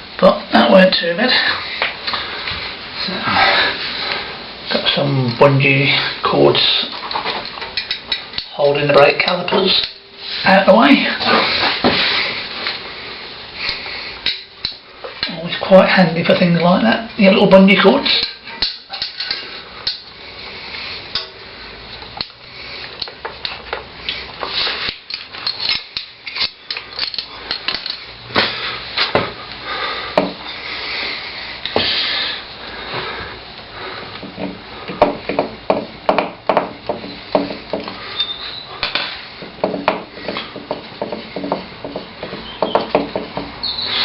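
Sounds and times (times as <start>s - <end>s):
metal parts clinking and knocking: 25.0s - 28.1s.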